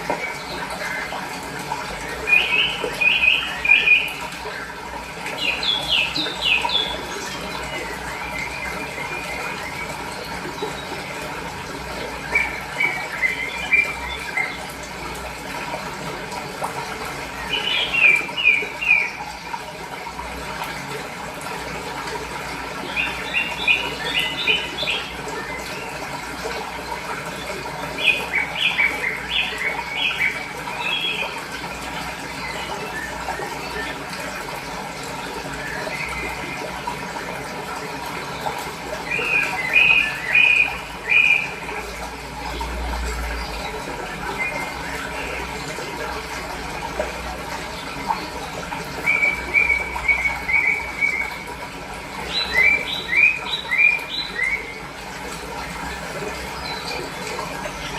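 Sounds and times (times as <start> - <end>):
water flowing: 0.0 - 57.9
small birds chirping: 2.1 - 4.6, 5.2 - 9.8, 27.4 - 31.4, 52.2 - 54.8.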